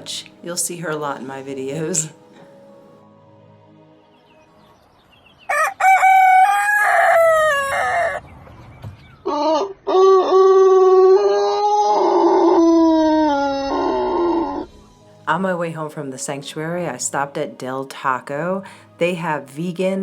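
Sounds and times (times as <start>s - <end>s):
rooster crowing: 5.5s - 8.2s, 9.3s - 14.6s.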